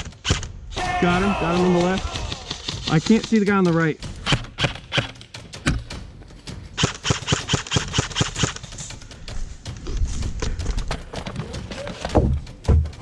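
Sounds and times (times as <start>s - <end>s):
airsoft rifle shots: 0.0s - 3.6s, 4.2s - 5.2s, 6.8s - 8.9s.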